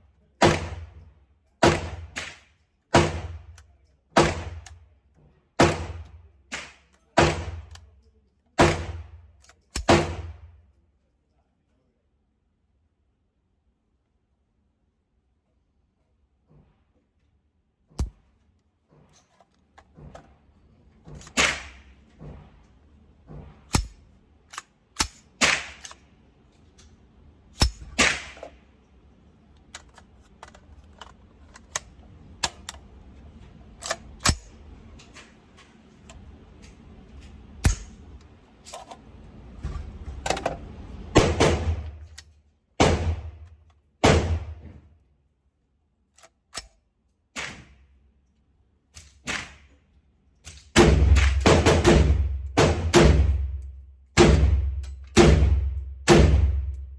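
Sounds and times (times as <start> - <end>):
gunshots: 0.4 - 1.0, 1.6 - 3.5, 5.6 - 7.8, 8.6 - 9.1, 9.8 - 10.5, 21.2 - 21.9, 25.0 - 26.0, 27.6 - 28.5, 41.1 - 42.1, 42.8 - 43.4, 44.0 - 44.6, 50.8 - 53.5, 54.2 - 56.7.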